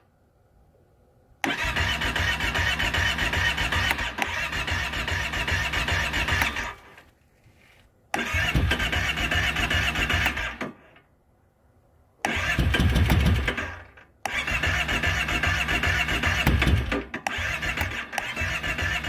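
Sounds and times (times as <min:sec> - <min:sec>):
electric starter cranking engine: 0:01.4 - 0:07.0, 0:08.2 - 0:11.0, 0:12.2 - 0:19.0.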